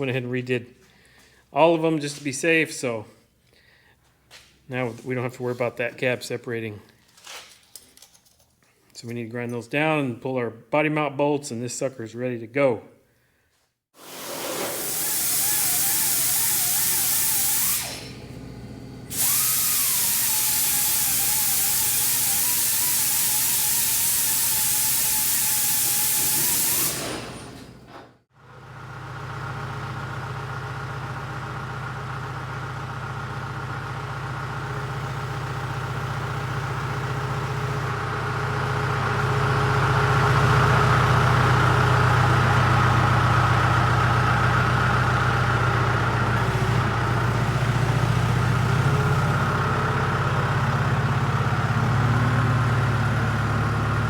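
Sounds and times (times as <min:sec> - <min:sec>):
angle grinder grinding metal: 0:14.0 - 0:18.4, 0:19.1 - 0:27.8
engine running: 0:14.6 - 0:54.0.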